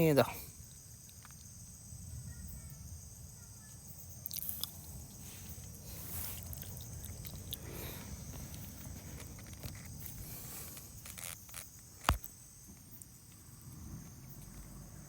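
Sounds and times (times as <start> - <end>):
high-pitched insect chorus: 0.0 - 15.0
soft clicks and rustles: 3.7 - 14.7.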